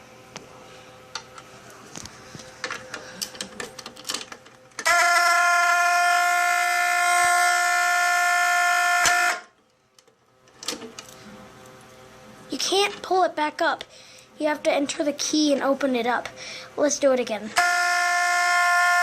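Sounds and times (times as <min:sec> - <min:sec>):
fire alarm horn steady tone: 0:04.8 - 0:09.6, 0:17.6 - 0:19.0.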